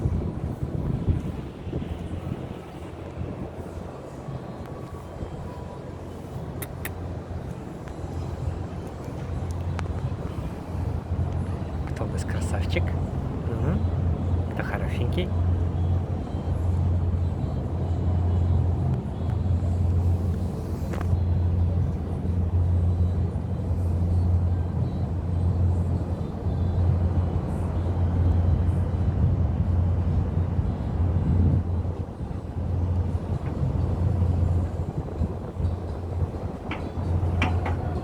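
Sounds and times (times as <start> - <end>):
vehicle engine rumble: 0.0 - 38.0
faint click: 6.6 - 7.0.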